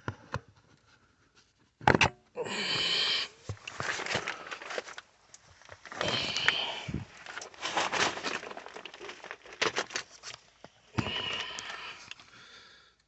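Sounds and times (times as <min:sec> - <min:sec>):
rustling and small clicks: 0:03.4 - 0:12.4.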